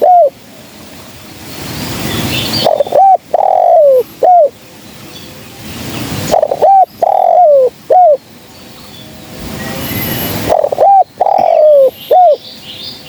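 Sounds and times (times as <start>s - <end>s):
dove cooing: 0.0s - 0.4s, 2.5s - 4.6s, 6.2s - 8.2s, 10.3s - 12.5s.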